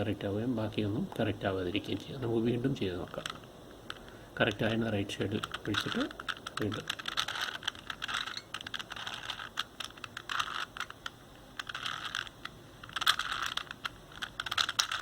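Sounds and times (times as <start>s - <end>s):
plastic puzzle cube clicking: 3.0s - 15.0s.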